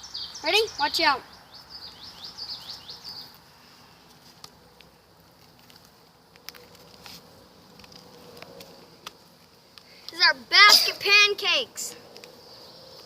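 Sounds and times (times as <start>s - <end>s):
bird chirping rapidly: 0.0s - 3.4s.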